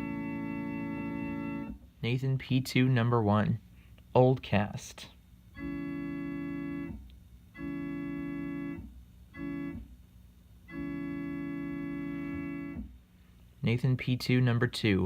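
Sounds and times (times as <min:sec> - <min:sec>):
electronic keyboard organ chord: 0:00.0 - 0:01.8, 0:05.6 - 0:09.9, 0:10.6 - 0:12.9.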